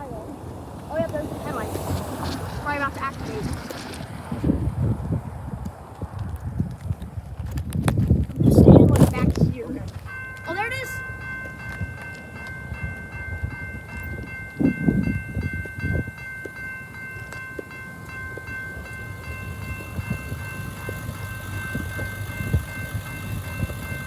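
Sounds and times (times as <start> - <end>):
wind buffeting microphone: 0.0 - 24.0
electronic warning bell ringing: 10.1 - 24.0.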